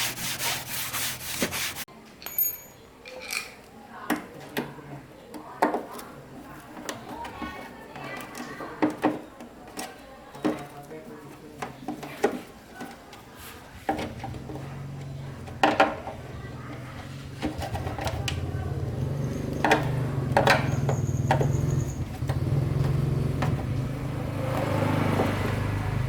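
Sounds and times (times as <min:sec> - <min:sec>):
sharp clicks and knocks: 0:13.9 - 0:25.4.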